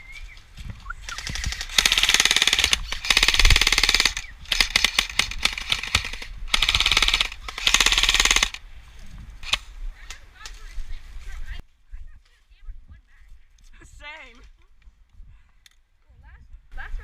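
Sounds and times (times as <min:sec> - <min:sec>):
airsoft rifle firing bursts: 0:01.1 - 0:08.6.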